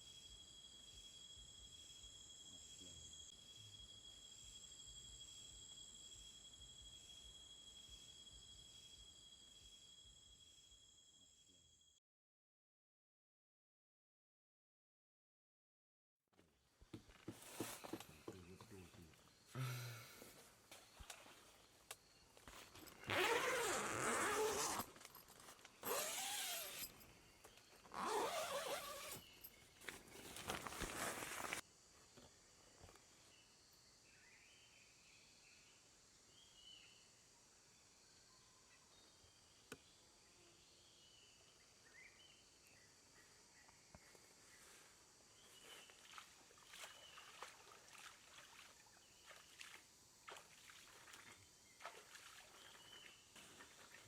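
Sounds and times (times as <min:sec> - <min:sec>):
faint chirps: 0:00.0 - 0:12.0, 0:17.4 - 0:25.2, 0:32.2 - 0:54.0.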